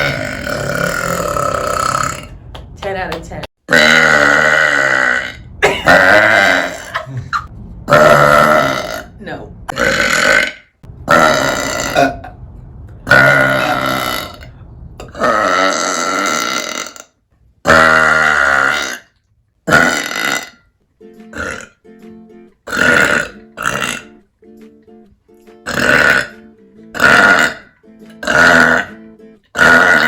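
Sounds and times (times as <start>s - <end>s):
woman burping loudly: 0.0s - 2.4s, 3.7s - 12.4s, 13.1s - 19.1s, 19.7s - 20.6s, 21.3s - 21.8s, 22.7s - 24.2s, 25.6s - 30.0s
plucked-string tune: 21.0s - 27.0s, 27.7s - 28.3s.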